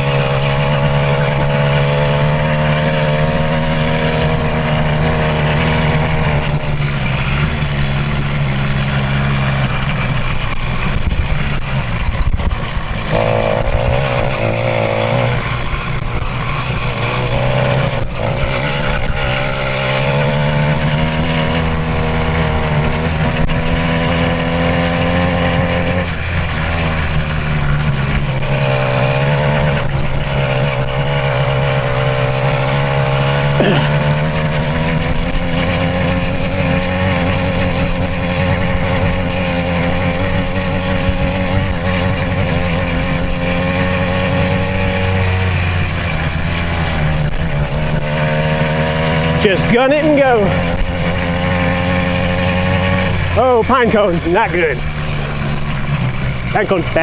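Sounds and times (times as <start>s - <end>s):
two-stroke engine at full throttle: 0.0s - 57.0s.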